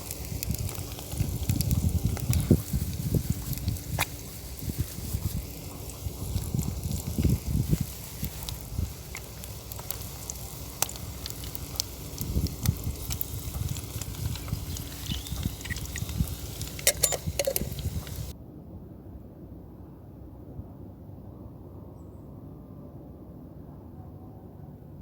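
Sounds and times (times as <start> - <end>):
crackling and sharp clicks: 0.0 - 18.3.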